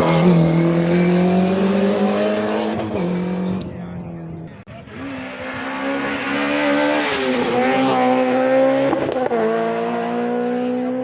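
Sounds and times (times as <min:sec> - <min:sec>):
rally car engine passing by: 0:00.0 - 0:11.0.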